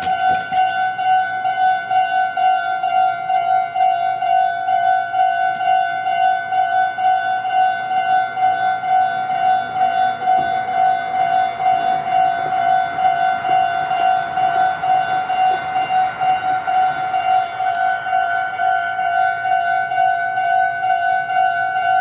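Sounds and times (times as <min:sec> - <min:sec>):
railroad crossing warning bell: 0:00.0 - 0:22.0.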